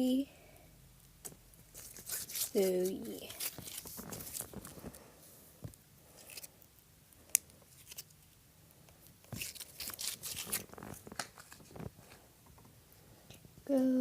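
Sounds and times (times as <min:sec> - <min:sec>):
slime clicking and crackling: 0:01.0 - 0:04.9, 0:05.7 - 0:12.1.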